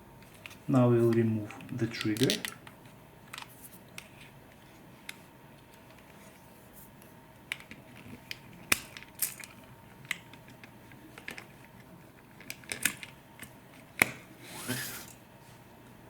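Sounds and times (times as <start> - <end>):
plastic parts clicking: 1.5 - 2.7.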